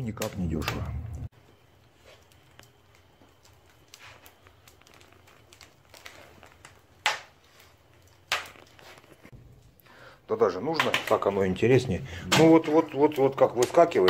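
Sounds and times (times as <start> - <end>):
wood fire crackling: 0.0 - 14.0
loud sharp crack of fire: 0.1 - 9.6.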